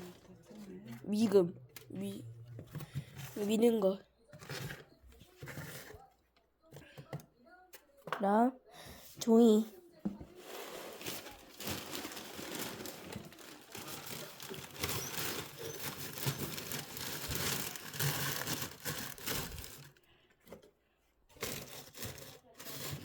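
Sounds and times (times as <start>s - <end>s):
paper crumpling and tearing: 10.5s - 20.0s, 21.4s - 23.0s.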